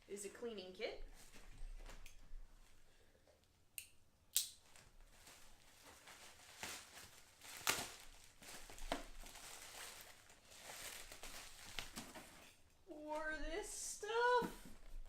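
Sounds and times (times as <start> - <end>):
packaging rustling and crinkling: 4.6 - 12.7.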